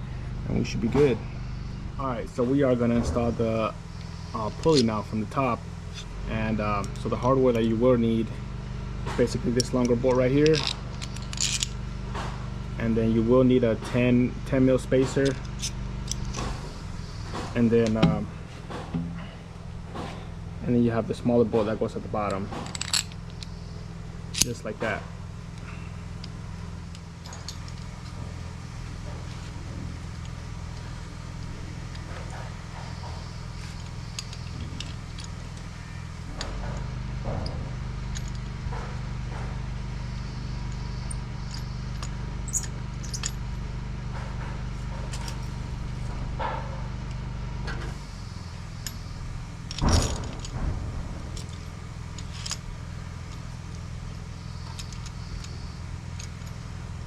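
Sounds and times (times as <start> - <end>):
low machinery drone: 0.0 - 57.0
metal tools clinking: 4.4 - 7.7, 9.2 - 11.8, 14.9 - 18.3, 21.4 - 28.4, 29.0 - 38.9, 40.7 - 43.5, 45.1 - 45.6, 48.8 - 56.7.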